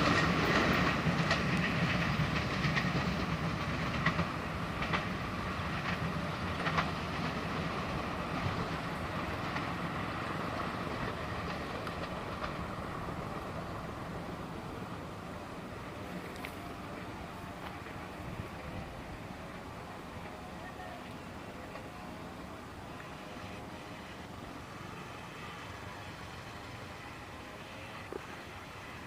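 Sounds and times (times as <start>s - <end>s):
passenger train rolling past: 0.0s - 29.0s
wheels clicking over rail joints: 0.0s - 29.0s.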